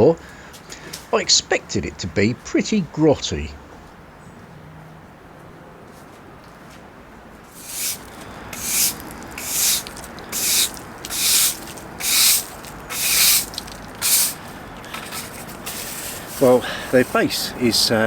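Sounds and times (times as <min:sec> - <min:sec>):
rhythmic rasping strokes: 0:07.5 - 0:18.0.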